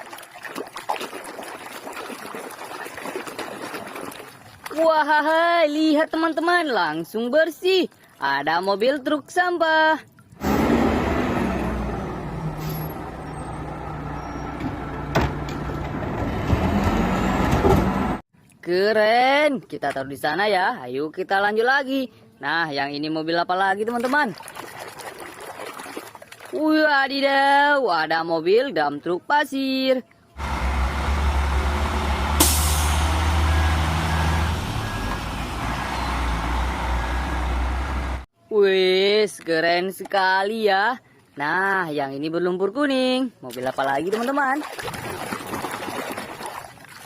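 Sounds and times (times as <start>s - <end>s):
truck engine running: 30.4s - 38.3s.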